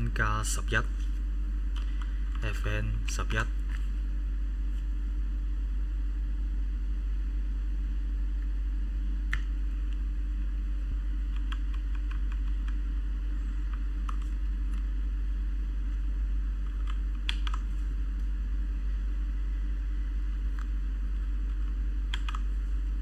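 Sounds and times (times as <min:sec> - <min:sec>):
steady low hum: 0:00.0 - 0:23.0
mechanical keyboard keystrokes: 0:16.6 - 0:17.7, 0:21.5 - 0:22.5.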